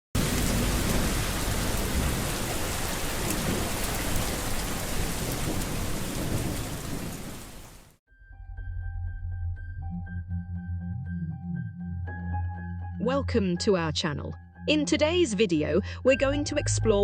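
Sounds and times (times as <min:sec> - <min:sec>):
low thunder rumble: 0:00.2 - 0:07.8
heavy rain: 0:00.2 - 0:08.0.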